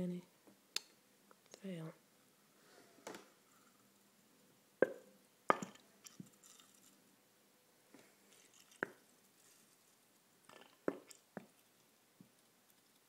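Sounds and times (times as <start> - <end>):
sharp clicks and taps: 0.7 - 1.6.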